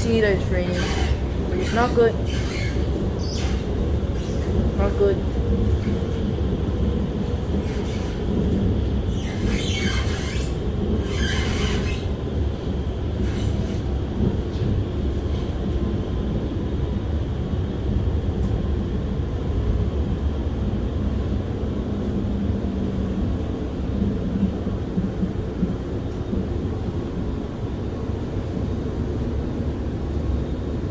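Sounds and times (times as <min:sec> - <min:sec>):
metro train rumbling: 0:00.0 - 0:30.9.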